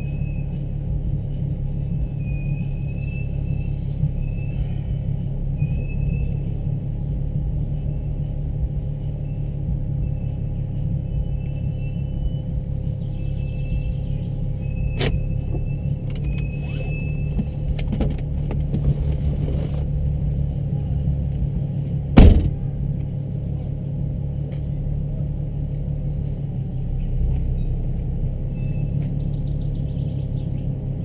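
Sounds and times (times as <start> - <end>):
car engine and road noise: 0.0 - 31.0
sharp loud thump: 22.2 - 22.7.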